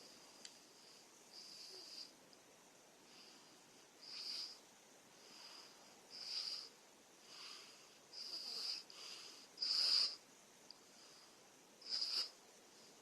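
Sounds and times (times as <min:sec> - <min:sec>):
wheezy whistling snoring: 0:01.3 - 0:02.1, 0:04.0 - 0:04.6, 0:06.1 - 0:06.7, 0:08.1 - 0:10.2, 0:11.8 - 0:12.4.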